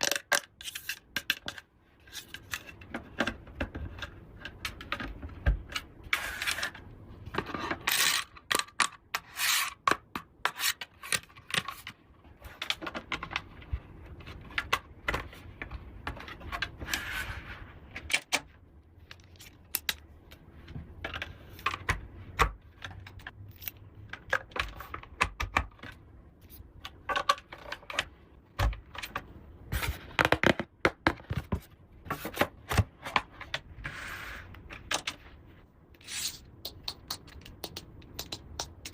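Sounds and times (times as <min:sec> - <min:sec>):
plastic toy pieces scraping: 0:07.4 - 0:11.8
plastic toy pieces clicking: 0:36.5 - 0:38.9.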